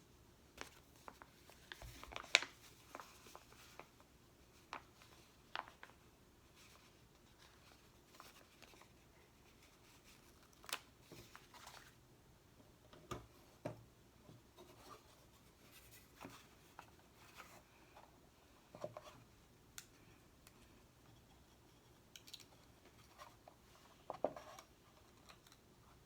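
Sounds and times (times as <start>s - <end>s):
stickers crinkling and tapping: 4.7s - 6.0s.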